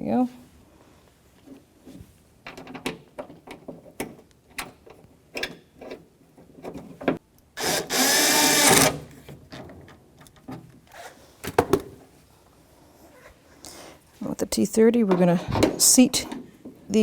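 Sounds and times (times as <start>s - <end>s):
cordless drill spinning: 7.6s - 9.1s.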